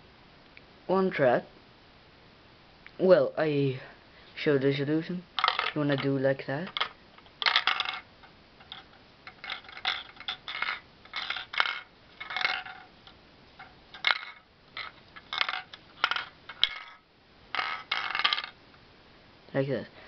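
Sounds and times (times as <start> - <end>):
marble rattling in plastic box: 5.4 - 12.9, 13.6 - 18.6.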